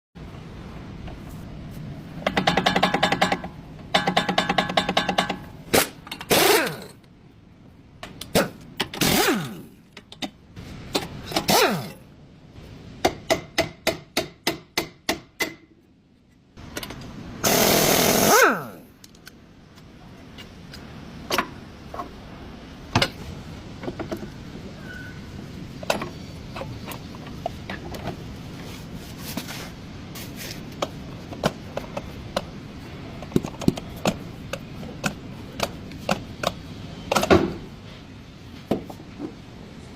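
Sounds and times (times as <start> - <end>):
steady low hum: 0.2 - 39.9
power tool running: 17.4 - 18.8.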